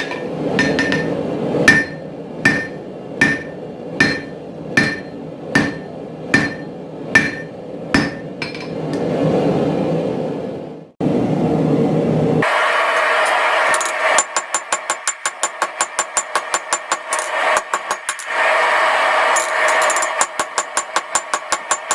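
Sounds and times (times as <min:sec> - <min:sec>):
hammer striking steel on anvil: 0:00.0 - 0:09.0, 0:13.8 - 0:18.2.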